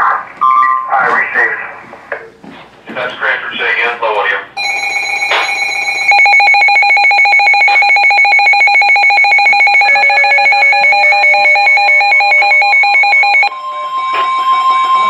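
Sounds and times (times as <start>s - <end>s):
trilling electronic alert tone: 4.6s - 15.0s.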